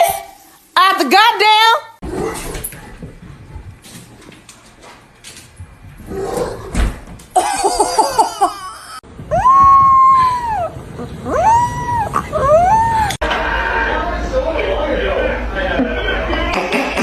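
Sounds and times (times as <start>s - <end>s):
dog howling: 9.3s - 13.2s.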